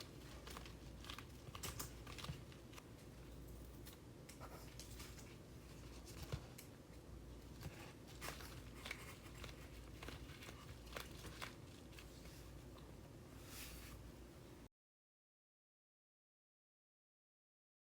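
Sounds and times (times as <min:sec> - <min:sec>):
faint clicks and rustles: 0:00.0 - 0:14.0
low steady hum: 0:00.0 - 0:14.7.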